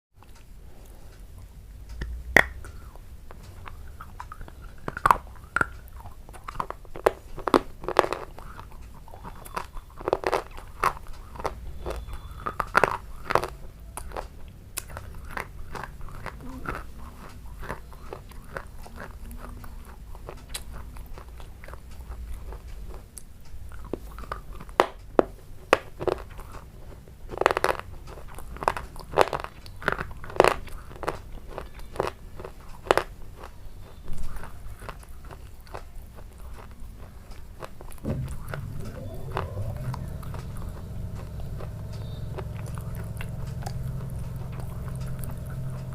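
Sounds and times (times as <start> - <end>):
person chewing crunchy food: 0.2 - 45.9.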